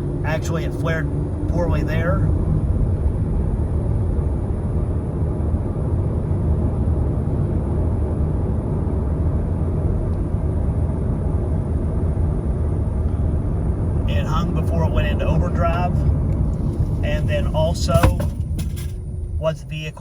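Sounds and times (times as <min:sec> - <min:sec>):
car engine rumble inside cabin: 0:00.0 - 0:20.0
tyre noise: 0:17.7 - 0:19.0.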